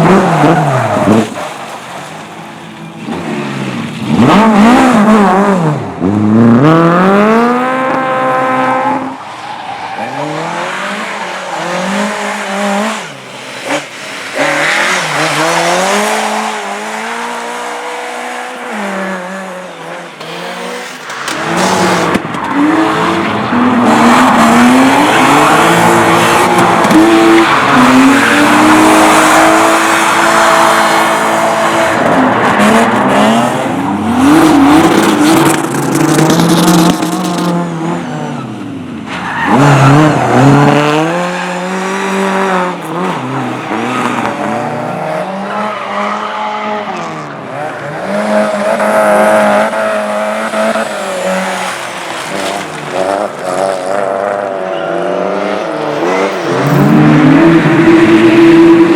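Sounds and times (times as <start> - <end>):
tyres squealing and skidding: 0.0 - 5.0, 7.2 - 37.4, 38.0 - 58.9
race car engines revving: 0.0 - 58.9.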